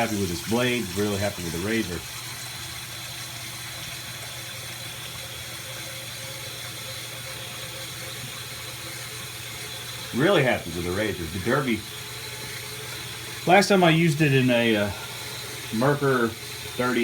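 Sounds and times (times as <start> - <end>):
tap running into sink: 0.0 - 2.2.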